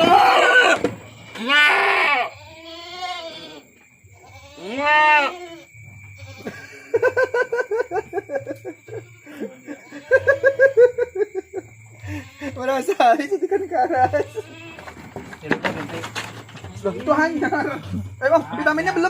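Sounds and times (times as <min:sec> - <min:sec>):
goat bleating: 0:00.0 - 0:06.7, 0:08.9 - 0:10.4, 0:12.0 - 0:12.9, 0:13.9 - 0:15.1.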